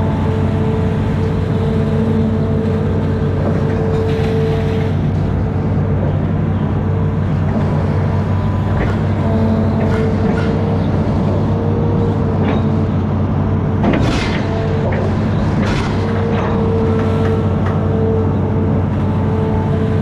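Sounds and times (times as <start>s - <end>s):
diesel engine running under load: 0.0s - 20.0s
engine whine: 0.0s - 20.0s.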